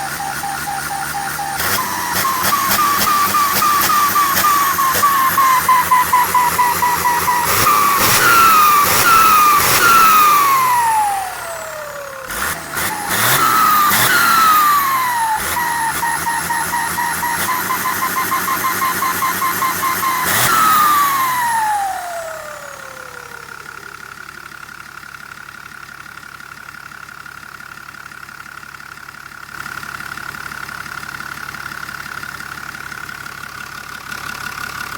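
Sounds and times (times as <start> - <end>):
engine revving: 0.0 - 24.5
turbo whistle: 0.0 - 24.5.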